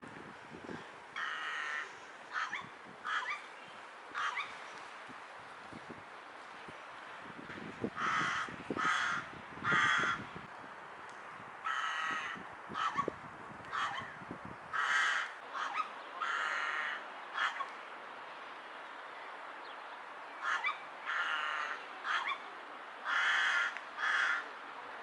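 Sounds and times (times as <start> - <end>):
rook cawing: 1.2 - 3.4, 4.2 - 4.5, 8.0 - 10.3, 11.6 - 13.1, 14.7 - 17.7, 20.4 - 22.4, 23.0 - 24.5.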